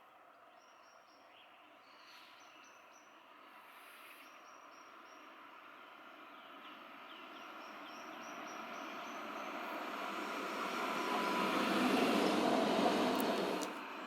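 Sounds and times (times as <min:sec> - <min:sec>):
tram running on track: 0:05.2 - 0:14.0.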